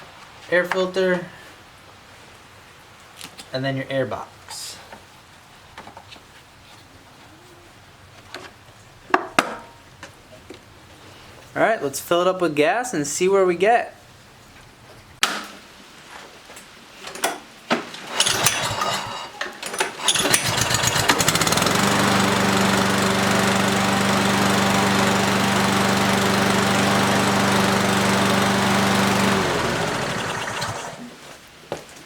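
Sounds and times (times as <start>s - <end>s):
lawnmower engine running: 18.1s - 19.3s, 20.0s - 31.2s.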